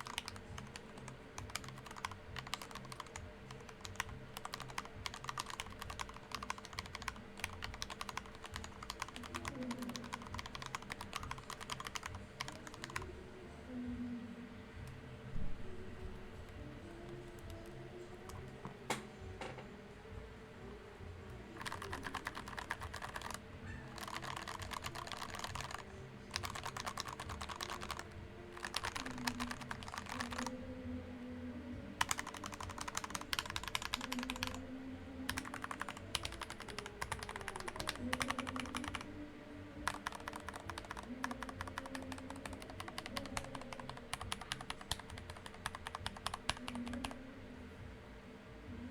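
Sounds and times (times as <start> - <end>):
typing on keyboard: 0.0 - 13.1, 21.6 - 30.6, 32.0 - 34.6, 35.2 - 39.2, 39.8 - 47.2
faint background noise: 0.0 - 48.9.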